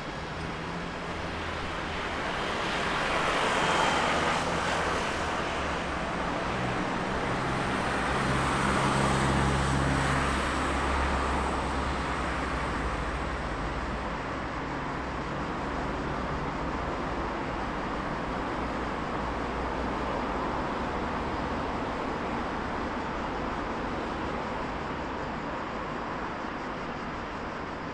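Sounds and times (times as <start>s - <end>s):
road traffic hum: 0.0s - 27.9s.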